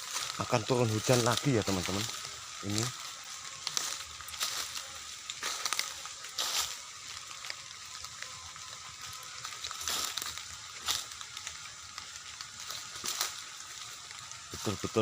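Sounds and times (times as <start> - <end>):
light rain hissing: 0.0 - 15.0
rustling crackles: 0.0 - 15.0.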